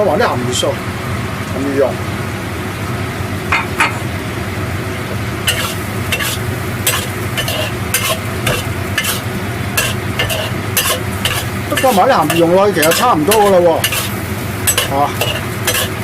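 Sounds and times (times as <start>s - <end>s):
food sizzling: 4.0s - 16.0s
spatula clacking against wok: 5.5s - 9.2s, 9.8s - 14.1s, 14.7s - 16.0s
spatula scraping in a wok: 5.5s - 16.0s.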